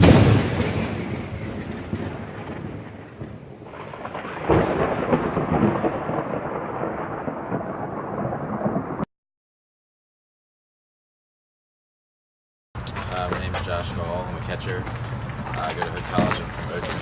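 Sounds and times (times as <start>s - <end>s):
loud thunderclap: 0.0s - 9.1s
rain: 0.0s - 9.1s
rumbling thunder: 0.0s - 9.1s.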